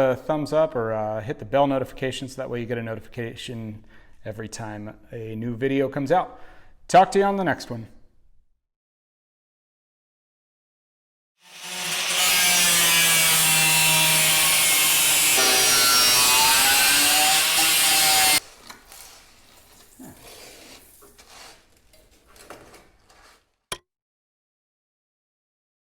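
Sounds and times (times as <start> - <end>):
power tool motor cutting: 11.4 - 18.4.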